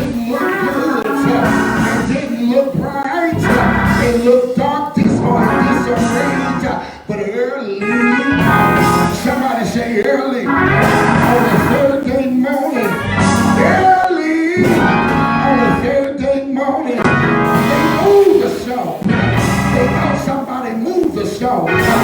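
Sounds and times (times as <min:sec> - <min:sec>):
instrumental accompaniment: 0:00.0 - 0:02.6, 0:03.4 - 0:04.5, 0:05.3 - 0:06.8, 0:08.0 - 0:09.6, 0:10.5 - 0:14.0, 0:14.6 - 0:16.0, 0:17.0 - 0:20.2, 0:21.7 - 0:22.0
person singing: 0:00.0 - 0:22.0.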